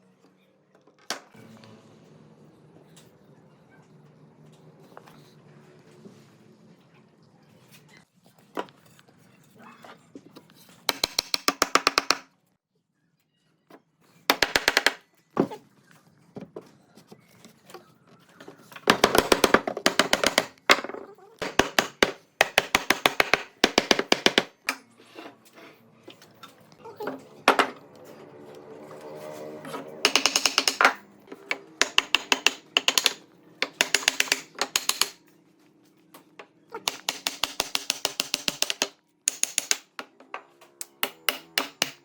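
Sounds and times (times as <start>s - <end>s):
power tool rattling: 18.9s - 20.8s, 21.4s - 24.6s.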